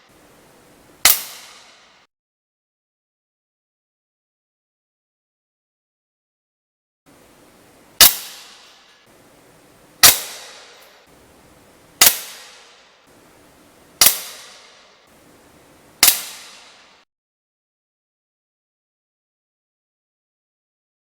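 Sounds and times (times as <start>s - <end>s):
air rifle shots: 1.0s - 2.0s, 8.0s - 8.9s, 10.0s - 11.1s, 12.0s - 12.9s, 14.0s - 15.1s, 16.0s - 17.0s.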